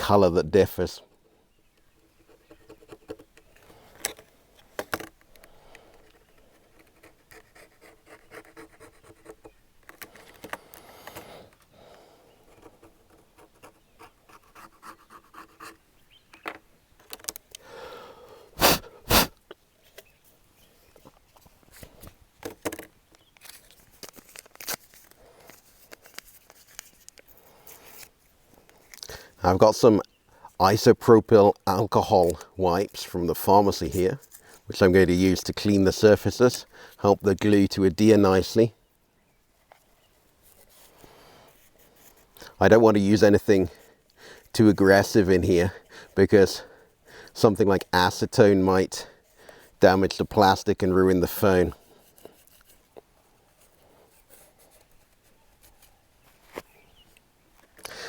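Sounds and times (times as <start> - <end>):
tool scraping plastic: 2.2 - 11.6, 51.8 - 56.7.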